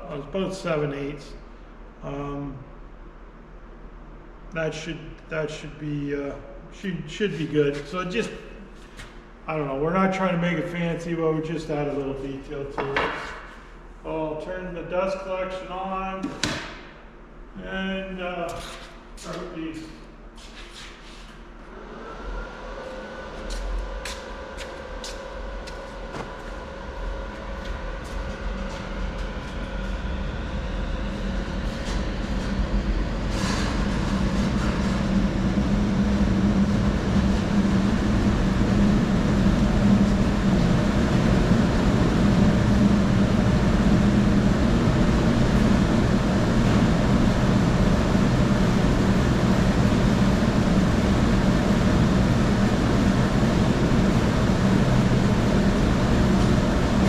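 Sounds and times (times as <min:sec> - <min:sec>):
dust collector and router drone: 0:21.6 - 0:57.0.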